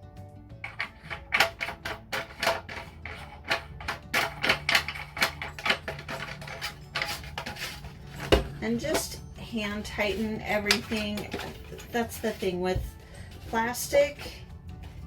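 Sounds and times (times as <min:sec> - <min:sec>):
background music: 0:00.0 - 0:15.0
plastic parts clicking and rattling: 0:00.6 - 0:09.0.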